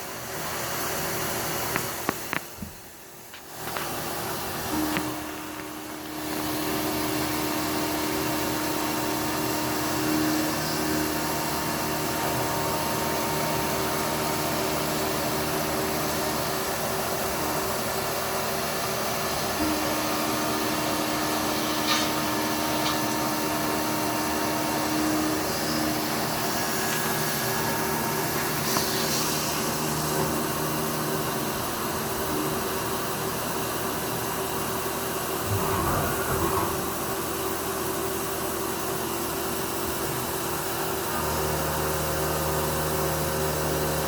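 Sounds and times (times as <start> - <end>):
milling machine whirring drone: 3.4 - 40.0
steady hum tone: 35.2 - 38.2.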